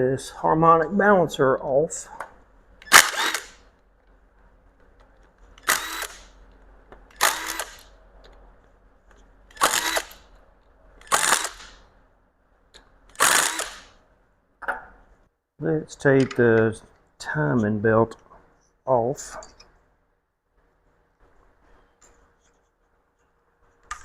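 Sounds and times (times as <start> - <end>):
impact gun bursts: 2.8 - 3.6.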